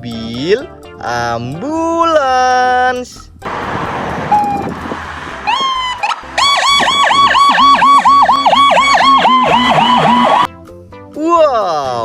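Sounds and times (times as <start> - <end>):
toy electronic siren wailing: 4.3 - 4.7, 5.5 - 10.5
rising electronic chirp: 5.5 - 10.5.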